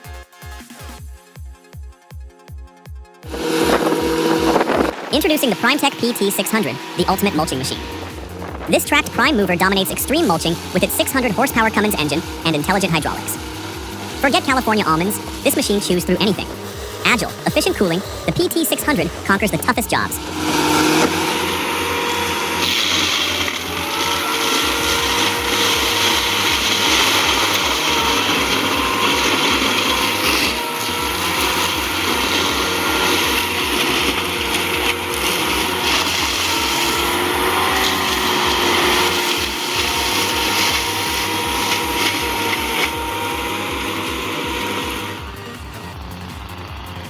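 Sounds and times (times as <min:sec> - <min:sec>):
forestry mulcher running: 0:03.3 - 0:47.0
low pulsing: 0:07.8 - 0:09.2.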